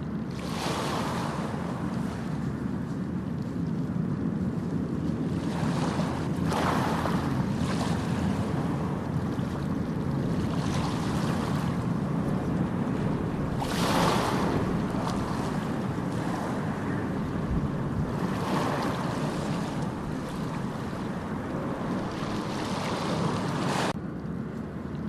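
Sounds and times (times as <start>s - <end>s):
wave breaking and washing in: 0.0s - 24.0s
ocean surf rumble: 0.0s - 25.0s.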